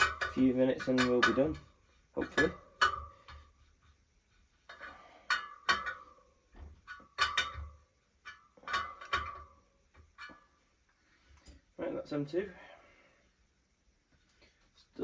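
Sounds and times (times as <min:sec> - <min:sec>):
wrench clinking on wheel spokes: 0:00.0 - 0:03.5, 0:04.7 - 0:10.6.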